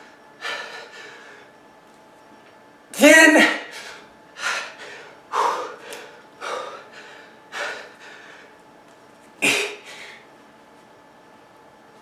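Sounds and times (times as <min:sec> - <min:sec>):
man breathing heavily: 0:00.4 - 0:01.6, 0:03.6 - 0:08.6, 0:09.4 - 0:10.3.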